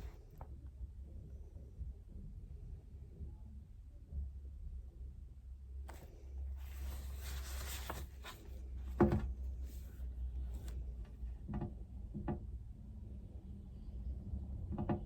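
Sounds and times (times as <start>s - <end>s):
low steady hum: 0.0s - 14.8s
scratchy rustle: 5.9s - 8.6s.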